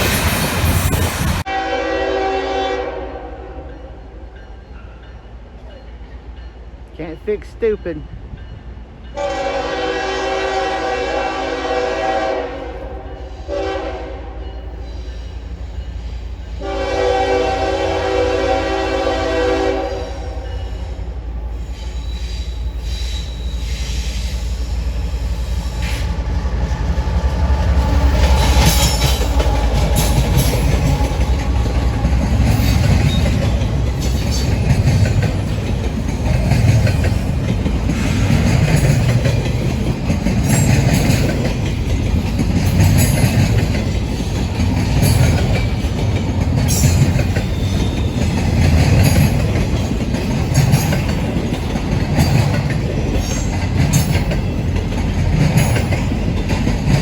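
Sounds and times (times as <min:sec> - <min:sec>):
train wheels clacking over rail joints: 0:00.0 - 0:01.5, 0:25.6 - 0:57.0
train rumble: 0:00.0 - 0:57.0.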